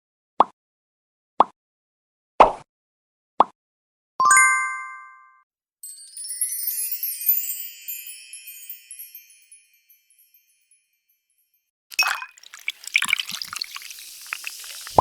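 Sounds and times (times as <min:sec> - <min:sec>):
sparkly chime: 0:05.8 - 0:12.3.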